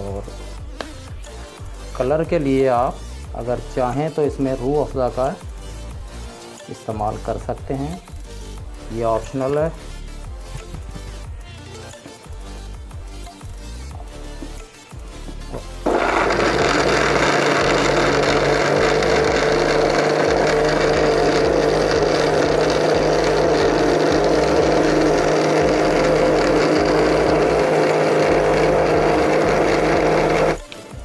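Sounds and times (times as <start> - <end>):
electric blender running: 15.8 - 30.6.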